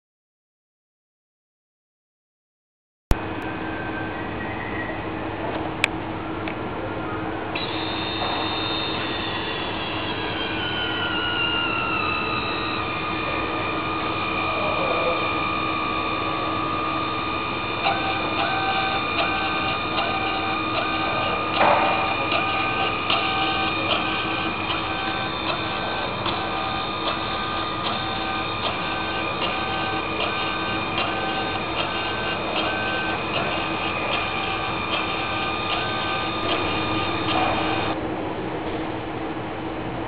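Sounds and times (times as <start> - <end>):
electric motor whine with pulses: 7.6 - 38.0.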